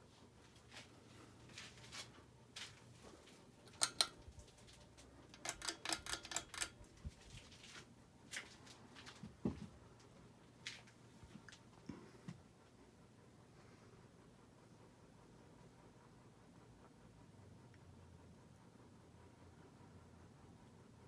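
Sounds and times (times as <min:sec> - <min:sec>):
ceiling fan motor hum: 0:00.0 - 0:21.0
sharp clicks and rattles: 0:03.7 - 0:07.8.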